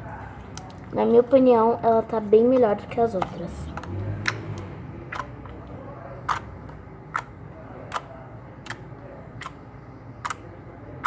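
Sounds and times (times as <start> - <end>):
slime clicking in hands: 3.8 - 5.6, 6.2 - 7.3, 7.9 - 9.6, 10.2 - 10.5.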